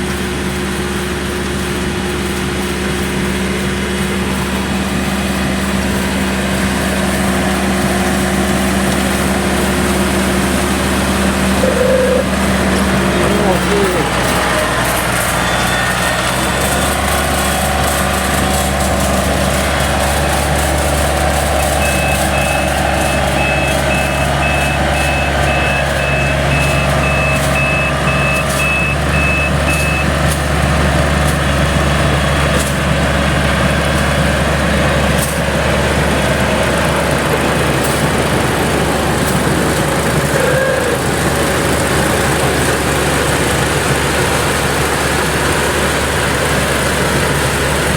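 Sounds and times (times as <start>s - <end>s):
combine harvester running: 0.0s - 47.9s
high electronic warning beep: 11.5s - 14.2s, 21.6s - 30.2s.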